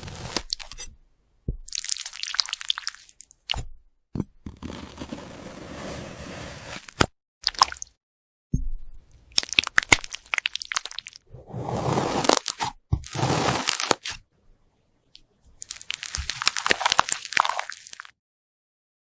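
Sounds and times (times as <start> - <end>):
crisp crunching and crackling: 12.2 - 14.1, 15.6 - 18.1.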